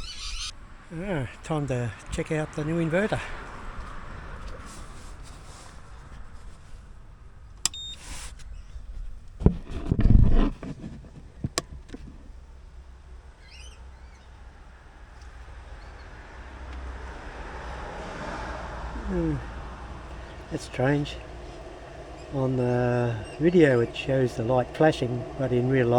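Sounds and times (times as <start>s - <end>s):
short high electronic beep: 0.0s - 0.5s.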